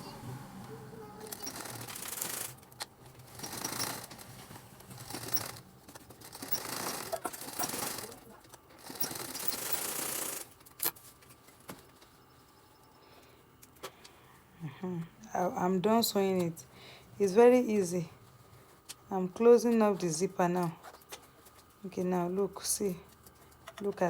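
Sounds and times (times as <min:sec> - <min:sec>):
sewing machine stitching: 0:00.0 - 0:10.5.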